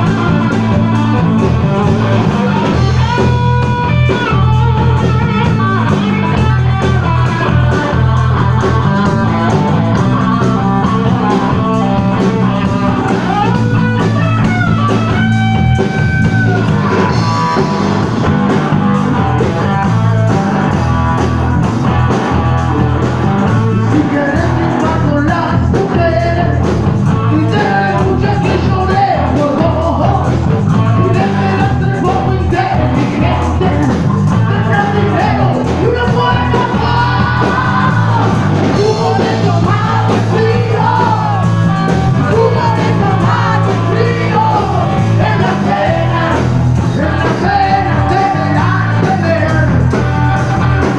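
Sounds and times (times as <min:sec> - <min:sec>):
electric guitar: 0:00.0 - 0:50.9
steady bass line: 0:00.0 - 0:50.9
person singing: 0:23.4 - 0:50.9.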